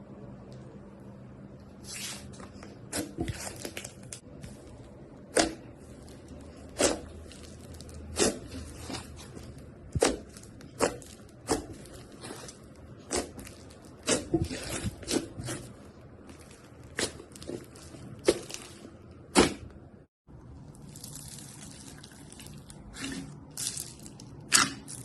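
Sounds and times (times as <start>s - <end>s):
slime crackling: 2.9s - 19.6s, 20.8s - 25.0s.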